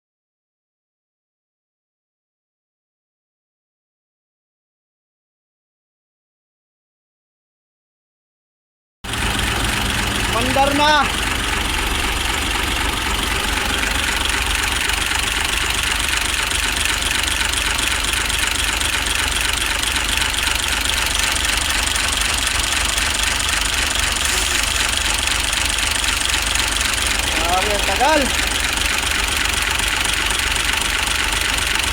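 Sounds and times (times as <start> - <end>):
diesel engine idling: 9.1 - 31.9.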